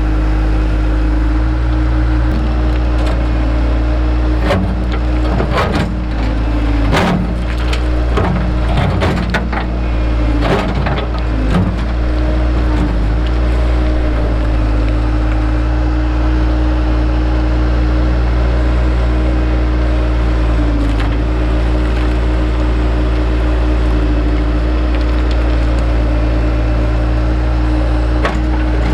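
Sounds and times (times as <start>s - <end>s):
machine engine running: 0.0s - 17.3s
rock knocking and clattering: 4.3s - 15.6s, 24.8s - 26.1s.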